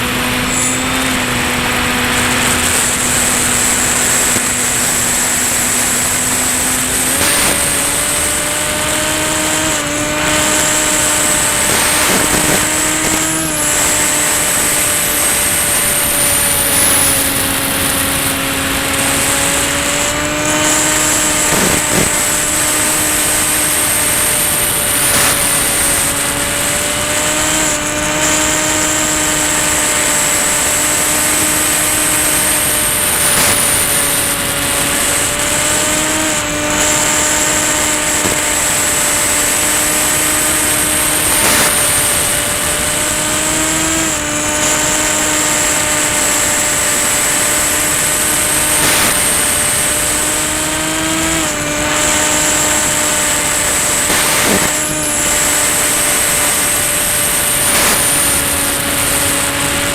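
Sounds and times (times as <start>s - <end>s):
electric motor and propeller whine: 0.0s - 59.9s
rush of air noise: 47.4s - 50.5s.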